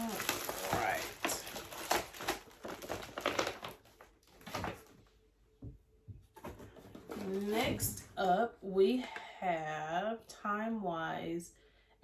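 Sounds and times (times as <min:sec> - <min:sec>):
packaging rustling: 0:00.0 - 0:05.1.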